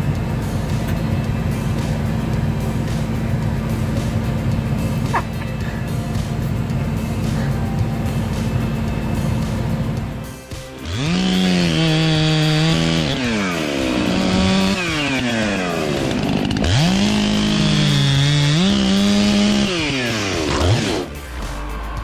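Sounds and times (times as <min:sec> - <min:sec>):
chainsaw revving: 0:00.0 - 0:22.0.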